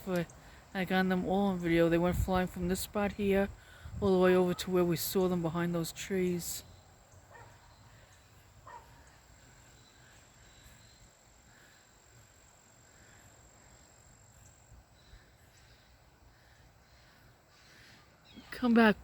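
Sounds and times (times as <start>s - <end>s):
faint soft chirps: 6.6s - 11.3s.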